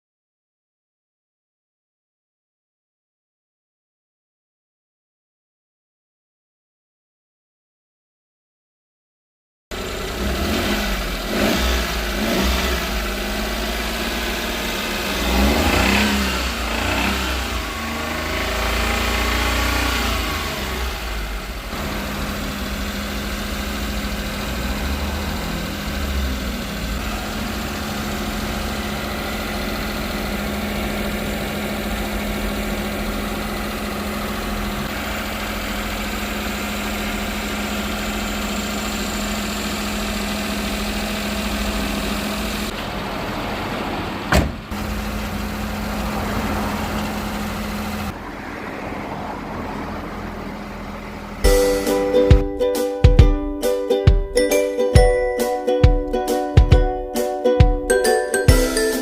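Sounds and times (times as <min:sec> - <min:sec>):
truck engine revving and idling: 0:09.7 - 0:52.4.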